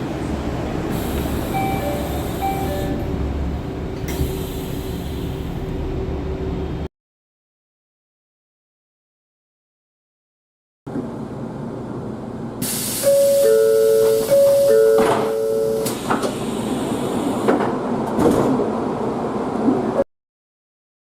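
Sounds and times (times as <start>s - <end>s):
compressed air hiss: 0.9s - 2.8s, 4.1s - 5.5s, 12.6s - 14.4s
two-note descending chime: 13.1s - 15.9s.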